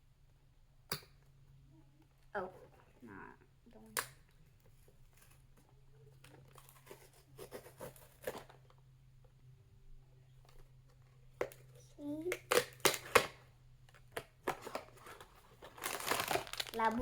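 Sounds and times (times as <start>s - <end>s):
toy packaging crinkling: 14.1s - 17.0s.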